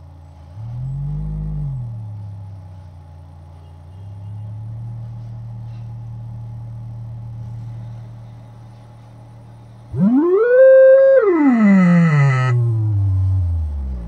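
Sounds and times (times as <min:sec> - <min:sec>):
low bass test tone: 0:00.5 - 0:02.8, 0:09.9 - 0:14.0.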